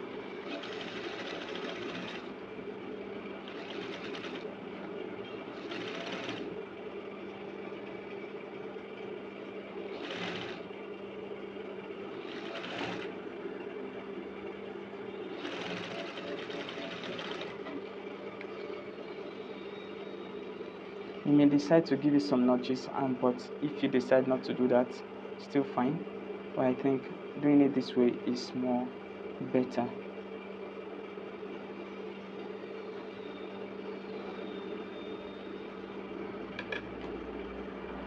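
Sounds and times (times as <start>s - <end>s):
sewing machine stitching: 0.4s - 2.4s, 3.4s - 4.5s, 5.3s - 6.6s, 9.9s - 10.7s, 12.2s - 13.2s, 15.3s - 17.8s.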